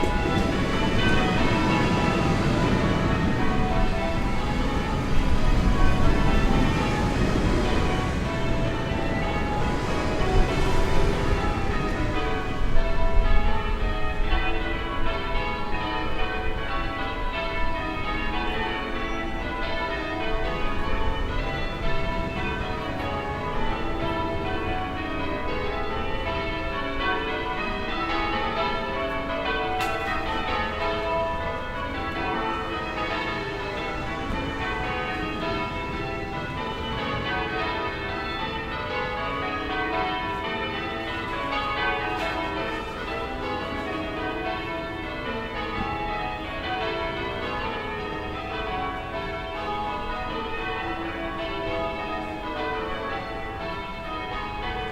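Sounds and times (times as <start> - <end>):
low town rumble: 0.0 - 39.4
distant church bells ringing: 0.0 - 54.9.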